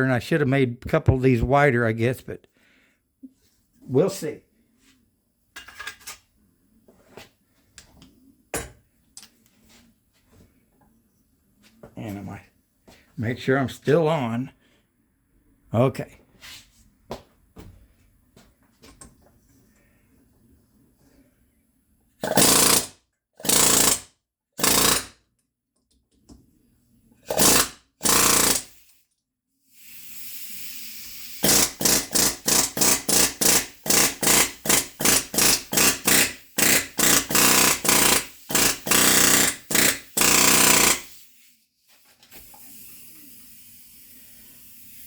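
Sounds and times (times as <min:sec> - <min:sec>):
pneumatic rivet gun hammering: 0:22.2 - 0:25.2, 0:27.2 - 0:29.0, 0:30.7 - 0:41.4
compressed air hissing: 0:29.7 - 0:32.5, 0:42.4 - 0:45.0.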